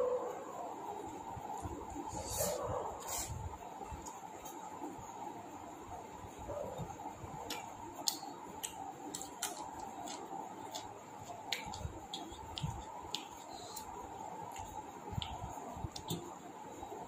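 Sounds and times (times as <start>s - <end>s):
person chewing food: 6.8s - 16.3s.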